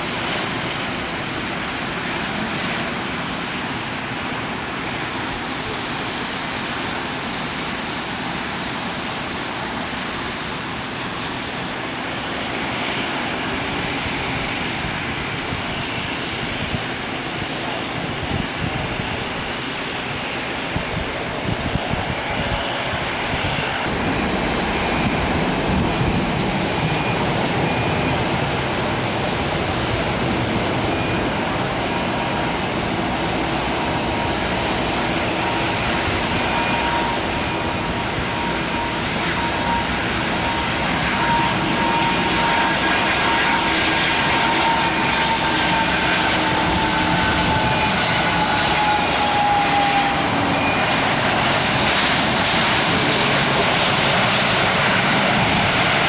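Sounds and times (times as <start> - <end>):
jet engine whine: 0.0 - 56.0
jet engines rushing: 0.0 - 56.0.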